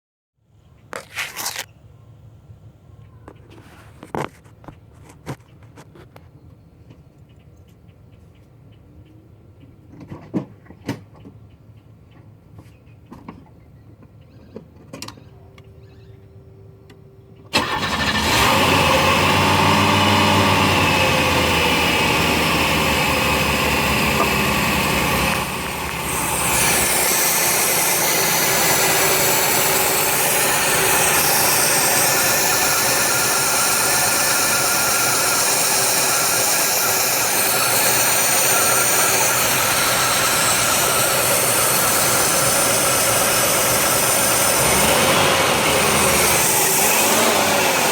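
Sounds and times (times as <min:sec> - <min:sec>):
car engine starting and idling: 0:17.4 - 0:47.9
high-pitched whine: 0:21.2 - 0:47.9.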